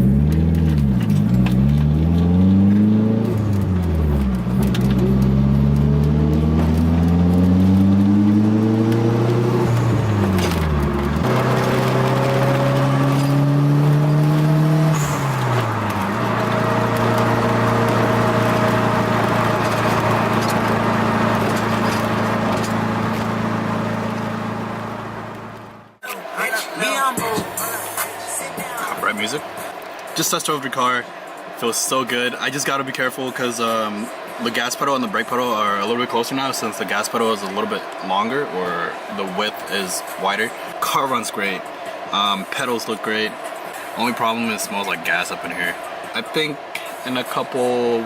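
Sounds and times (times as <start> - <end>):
car engine revving under load: 0.0 - 26.0.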